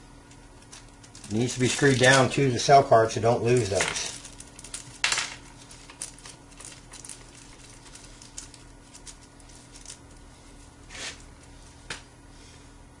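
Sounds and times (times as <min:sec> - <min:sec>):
parts bag rustling: 0:00.6 - 0:02.6, 0:03.4 - 0:11.3.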